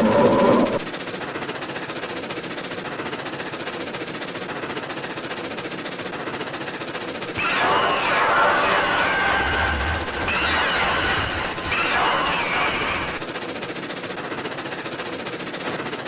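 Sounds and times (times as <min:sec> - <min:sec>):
creature screech: 0:00.0 - 0:00.9, 0:07.4 - 0:13.3.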